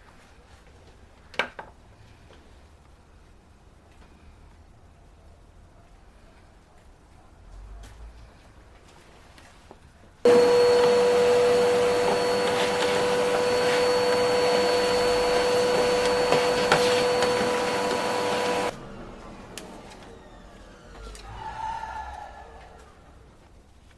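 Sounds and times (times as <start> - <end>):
electric motor whining: 10.3 - 18.7.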